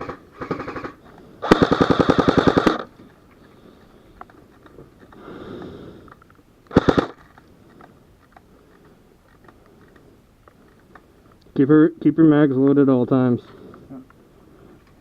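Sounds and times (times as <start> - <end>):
airsoft gunshots: 0.0 - 2.9, 6.7 - 7.2.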